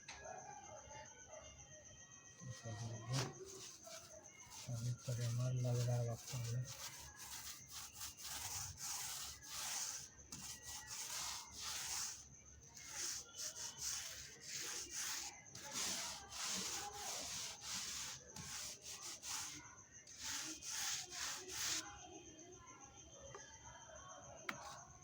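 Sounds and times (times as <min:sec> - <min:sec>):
rubbing strokes on wooden cabinet: 0:02.4 - 0:21.8.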